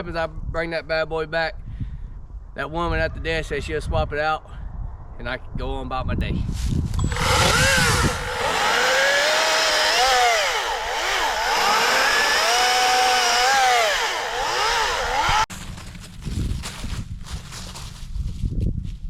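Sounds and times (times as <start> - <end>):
battery chainsaw motor whine: 7.0 - 15.5.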